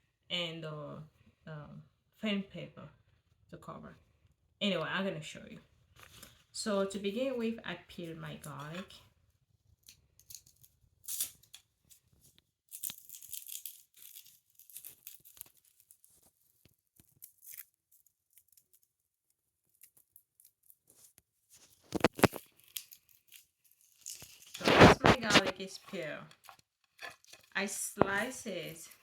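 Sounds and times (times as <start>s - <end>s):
garlic skins crackling: 12.7s - 16.3s, 17.0s - 18.9s, 21.8s - 29.0s.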